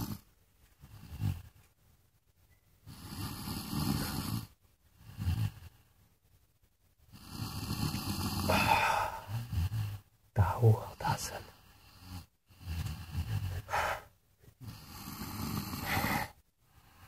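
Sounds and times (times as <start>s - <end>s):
loud snoring: 0.0s - 0.2s, 0.9s - 1.5s, 2.9s - 5.8s, 7.1s - 10.1s, 11.5s - 17.0s
snort-like breath: 0.0s - 1.6s, 2.8s - 5.9s, 7.1s - 10.1s, 11.0s - 17.0s.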